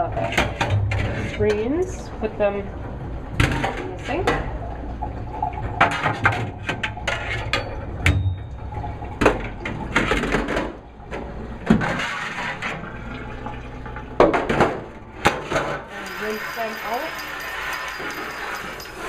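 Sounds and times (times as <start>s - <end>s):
water running and draining: 2.1s - 15.3s, 15.9s - 19.0s
metal strainers clanking in sink: 15.9s - 19.0s.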